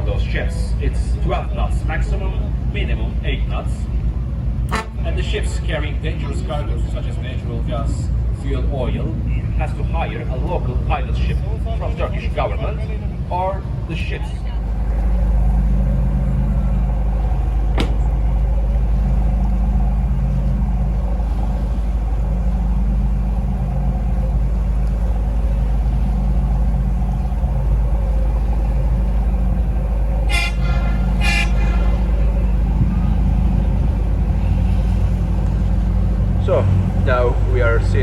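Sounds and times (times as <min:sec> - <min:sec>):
boat engine droning: 0:00.0 - 0:38.0
open-air noise: 0:00.0 - 0:38.0
horn short toots: 0:04.7 - 0:05.2, 0:30.3 - 0:32.2.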